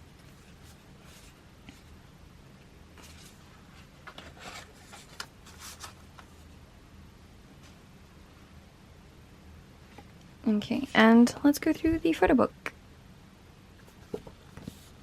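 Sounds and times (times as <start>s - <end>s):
paper and plastic rustling: 3.0s - 6.4s, 13.8s - 15.0s.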